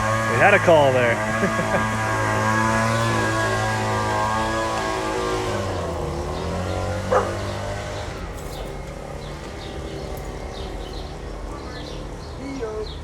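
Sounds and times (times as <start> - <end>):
vehicle engine passing: 0.0 - 13.0
dog barking: 6.9 - 7.9.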